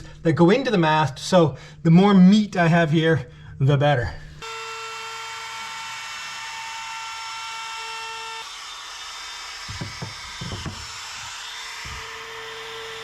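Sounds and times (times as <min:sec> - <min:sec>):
wood knocking: 0:09.6 - 0:12.2.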